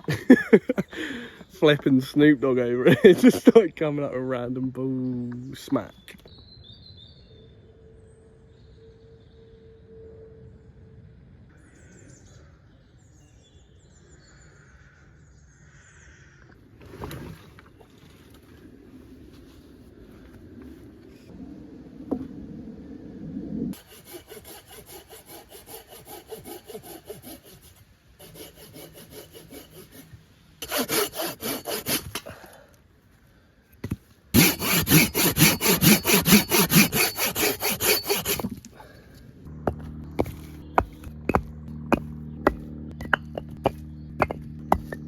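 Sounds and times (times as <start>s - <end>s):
hand saw cutting wood: 23.8s - 32.3s, 34.4s - 38.6s, 39.6s - 45.0s
sharp knocks: 39.5s - 45.0s.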